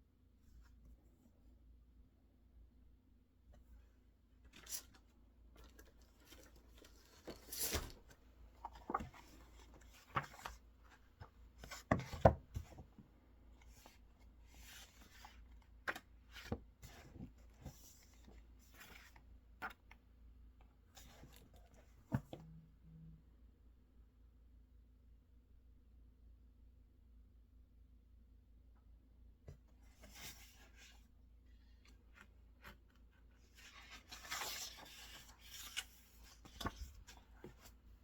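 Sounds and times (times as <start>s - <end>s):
paper rustling: 4.5s - 12.8s, 32.2s - 37.8s.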